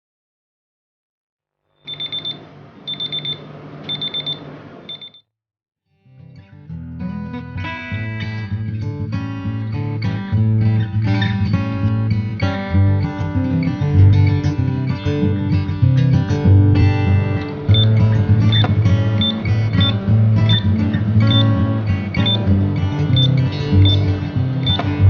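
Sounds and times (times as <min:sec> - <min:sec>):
alarm clock beeping: 0:01.9 - 0:05.2, 0:18.5 - 0:20.6, 0:21.3 - 0:21.5, 0:22.2 - 0:22.4, 0:23.2 - 0:24.8
acoustic guitar music: 0:06.1 - 0:25.0.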